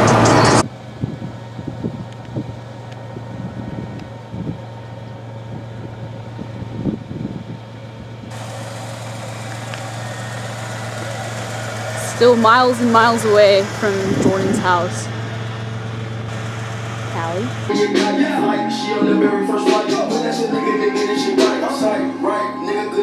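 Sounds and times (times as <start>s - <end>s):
car engine hum: 0.0s - 18.6s
road noise: 0.0s - 22.8s.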